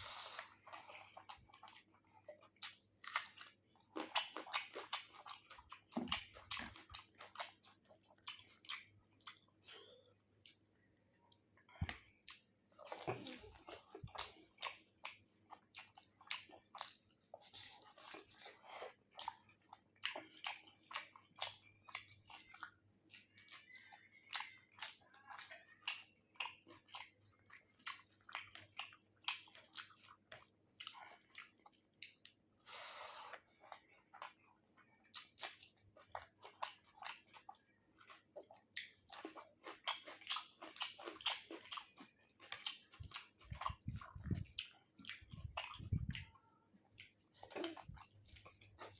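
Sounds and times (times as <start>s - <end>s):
wet chewing: 0.0s - 48.9s
food crunching: 33.7s - 46.3s.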